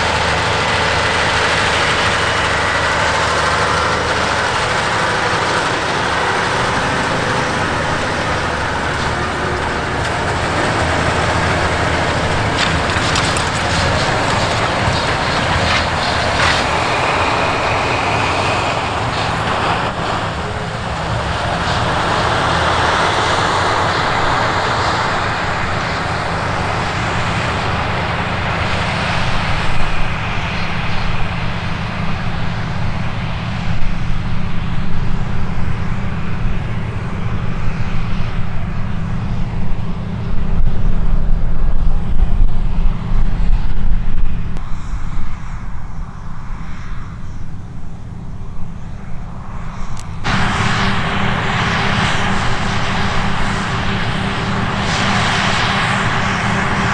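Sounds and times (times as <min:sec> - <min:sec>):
broad rushing noise: 0:00.0 - 0:56.9
diesel engine drone: 0:00.0 - 0:56.9.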